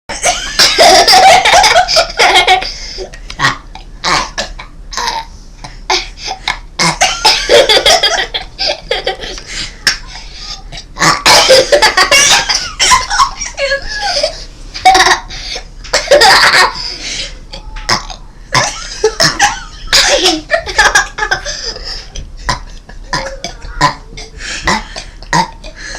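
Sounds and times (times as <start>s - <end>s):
girls laughing: 0.1s - 3.2s, 7.0s - 10.4s, 11.3s - 15.3s, 15.9s - 17.0s, 18.6s - 25.9s
child burping: 17.5s - 20.3s, 22.5s - 25.6s.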